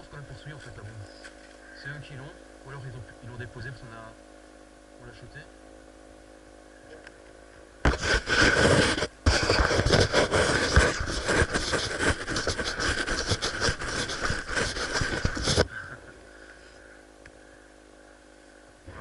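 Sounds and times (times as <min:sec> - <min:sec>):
scraping against microphone: 0:07.9 - 0:15.7.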